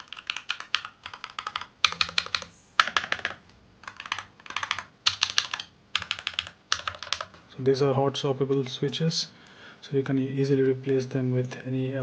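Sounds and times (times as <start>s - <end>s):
mechanical keyboard typing: 0.0s - 7.4s.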